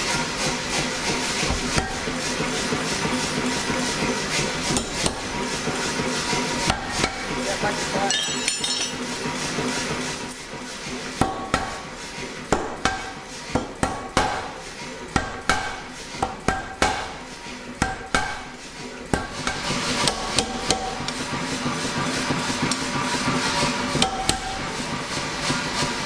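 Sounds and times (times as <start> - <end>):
hammer striking steel on anvil: 8.0 - 9.2, 15.2 - 17.1, 17.8 - 18.5, 24.0 - 24.6.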